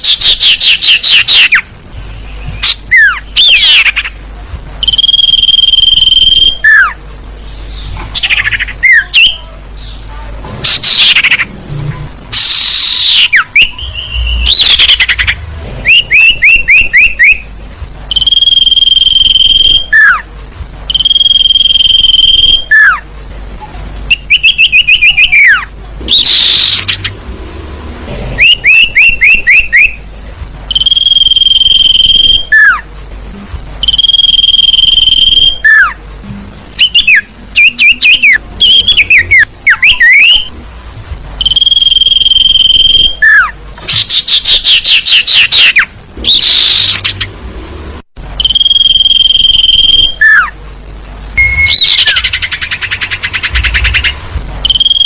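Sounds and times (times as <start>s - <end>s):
whistled bird notes: 0.0s - 4.1s, 4.8s - 7.0s, 10.6s - 11.5s, 12.3s - 17.5s, 18.1s - 20.3s, 20.9s - 23.0s, 24.1s - 27.2s, 28.4s - 30.1s, 30.7s - 32.9s, 33.8s - 36.0s, 36.8s - 40.5s, 41.4s - 47.3s, 48.4s - 50.5s, 51.4s - 55.0s
falling bird chirps: 12.3s - 20.2s, 51.4s - 55.0s.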